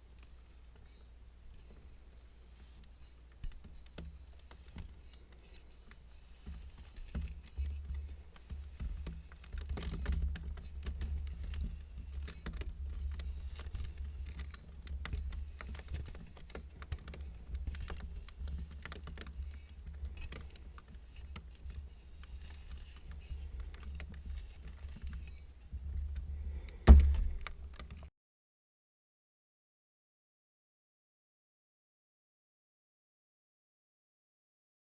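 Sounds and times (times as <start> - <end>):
loud thump: 26.9 - 27.4.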